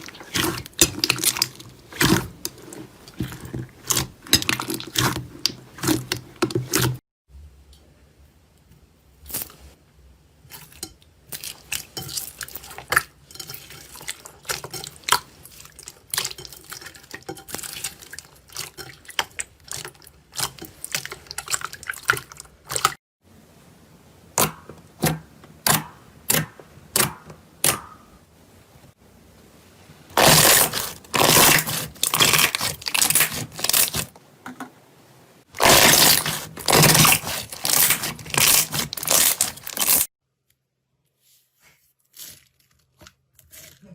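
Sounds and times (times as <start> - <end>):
slime dense crackling: 30.2 - 34.1, 35.6 - 40.1.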